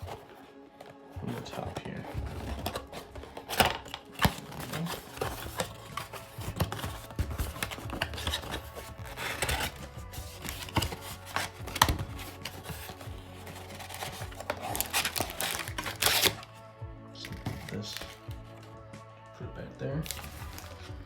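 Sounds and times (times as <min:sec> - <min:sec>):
cardboard rubbing and scraping: 0:01.2 - 0:16.5.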